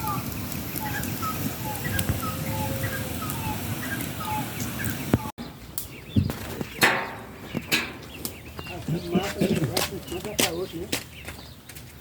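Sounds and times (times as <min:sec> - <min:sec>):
bird calling with sliding notes: 0:00.0 - 0:09.3
sharp knocks: 0:06.2 - 0:08.2.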